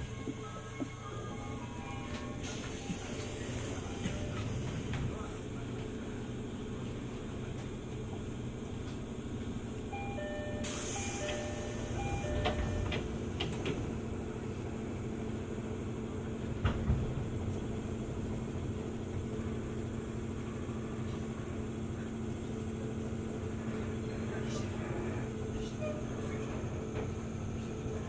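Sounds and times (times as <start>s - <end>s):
train rumble and hum: 0.0s - 28.0s.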